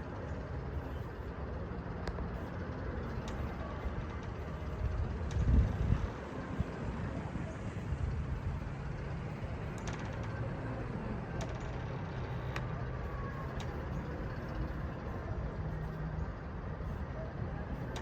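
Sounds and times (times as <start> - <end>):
low mechanical hum: 0.0 - 18.0
faint clicks: 9.3 - 16.1.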